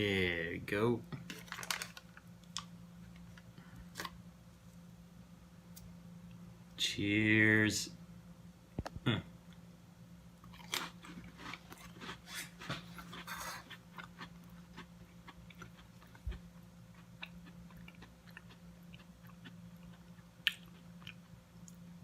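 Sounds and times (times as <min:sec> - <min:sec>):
faint steady hum: 0:00.0 - 0:22.0
cracker chewing crunches: 0:10.4 - 0:21.8.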